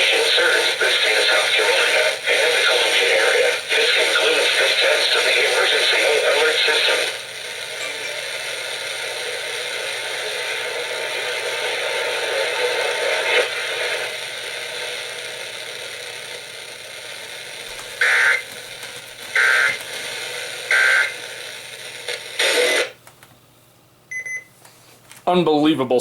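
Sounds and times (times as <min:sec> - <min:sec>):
radio static hiss: 0:00.0 - 0:23.0
two-tone digital data bursts: 0:20.7 - 0:21.1.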